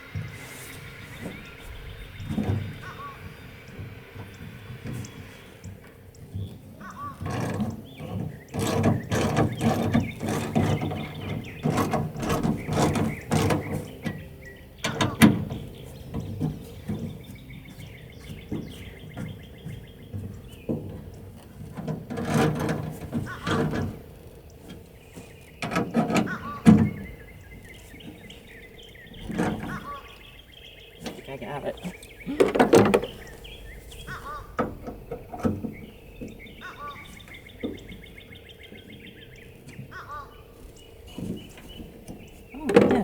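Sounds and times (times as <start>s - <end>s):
metal latch parts rattling: 6.0s - 38.1s.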